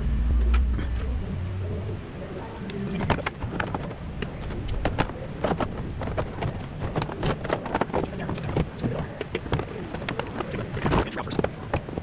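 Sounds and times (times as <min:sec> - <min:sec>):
low rumble: 0:00.0 - 0:06.8.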